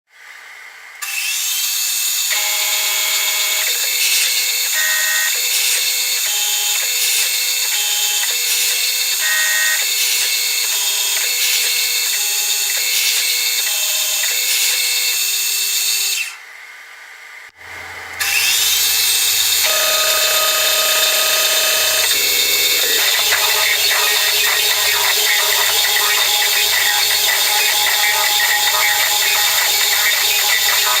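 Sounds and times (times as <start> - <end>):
milling machine spindle whine: 1.5 - 16.4, 17.7 - 31.0
low hum: 17.6 - 31.0
stepper motor whines: 17.6 - 31.0.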